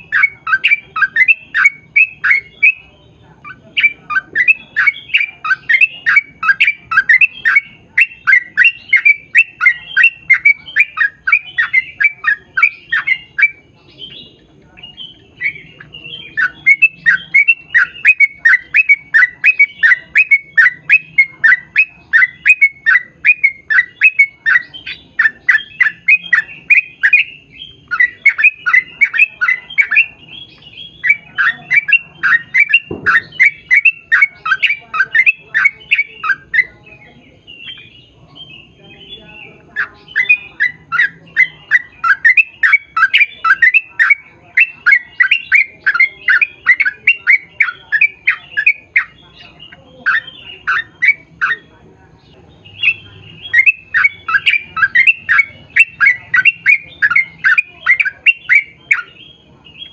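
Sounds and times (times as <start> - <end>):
bird chattering call: 0.0 - 59.9.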